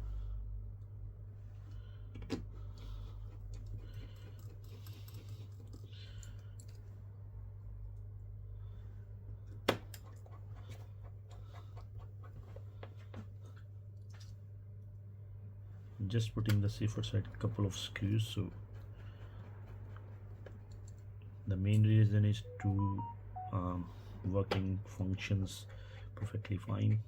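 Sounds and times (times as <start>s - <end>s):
low hum: 0.0s - 4.5s.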